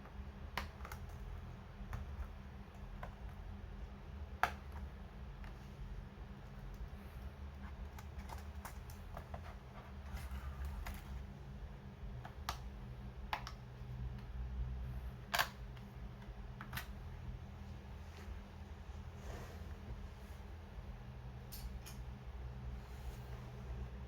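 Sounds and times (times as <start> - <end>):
low steady hum: 0.0 - 24.0
plastic laptop parts clicking: 0.5 - 3.4, 7.7 - 9.5, 13.3 - 14.3, 15.3 - 16.9.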